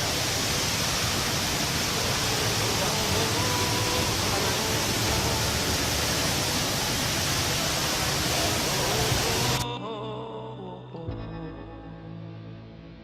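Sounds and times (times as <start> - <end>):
indoor waterfall rushing: 0.0 - 9.7
soft music: 1.9 - 13.0.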